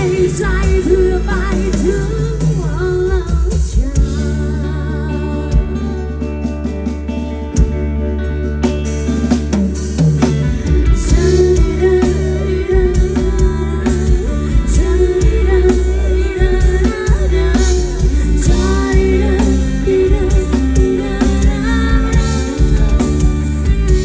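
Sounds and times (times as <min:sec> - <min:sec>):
pop band playing instrumental: 0:00.0 - 0:24.0.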